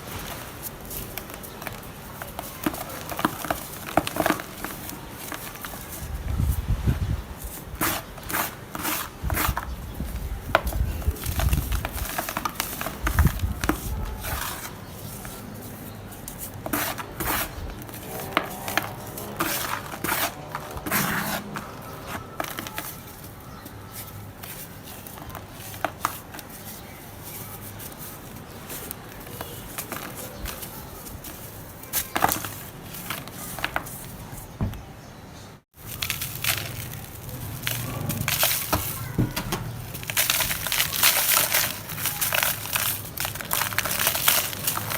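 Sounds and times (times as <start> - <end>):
dirt chunks crumbling: 35.8 - 44.9.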